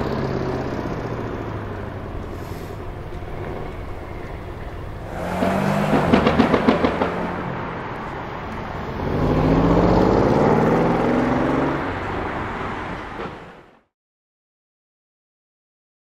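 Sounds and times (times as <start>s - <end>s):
exhaust crackles: 0.0s - 12.1s
car engine accelerating: 0.0s - 13.2s.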